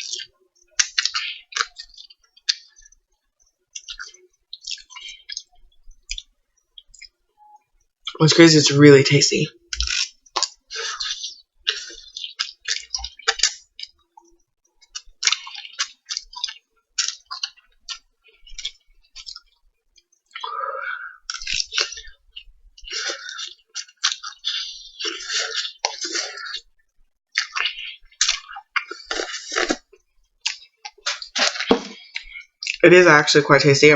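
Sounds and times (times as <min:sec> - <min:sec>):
chewing and lip smacks: 0:00.0 - 0:08.2, 0:09.5 - 0:32.8
person slurping noodles: 0:22.9 - 0:26.6, 0:27.4 - 0:29.9.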